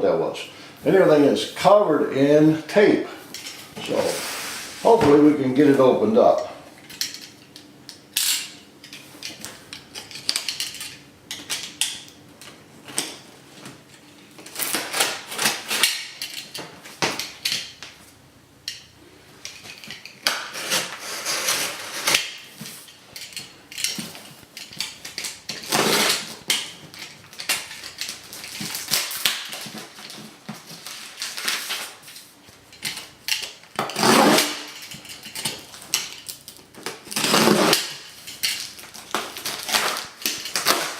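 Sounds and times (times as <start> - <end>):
cardboard box scraping and rustling: 3.8 - 5.0
packing tape tearing: 14.4 - 17.4, 20.1 - 40.9.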